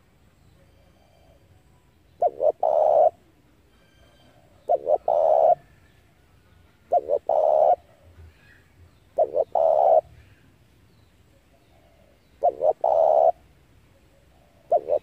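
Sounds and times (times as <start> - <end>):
dove cooing: 2.2 - 5.8, 6.5 - 8.5, 9.1 - 10.3, 11.7 - 13.5, 14.1 - 15.0.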